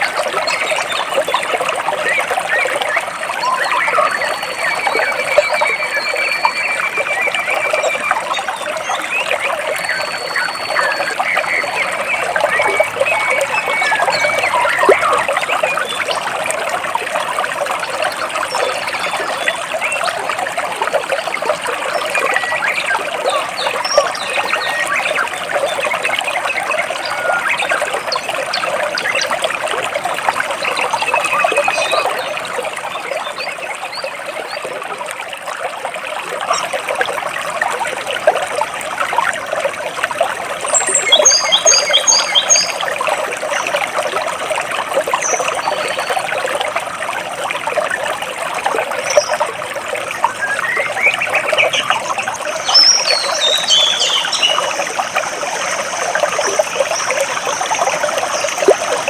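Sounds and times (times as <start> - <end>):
water trickling over rocks: 0.0 - 59.0
birds chirping: 40.7 - 42.9, 50.2 - 59.0.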